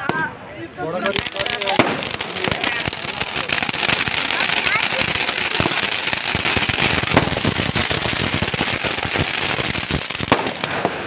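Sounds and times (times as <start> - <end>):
firecrackers crackling: 0.0 - 11.0
loud firecracker bangs: 0.0 - 11.0.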